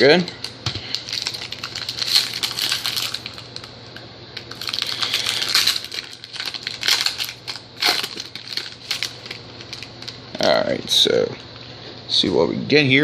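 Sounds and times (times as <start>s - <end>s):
card pack wrapper crinkling: 0.8s - 10.6s.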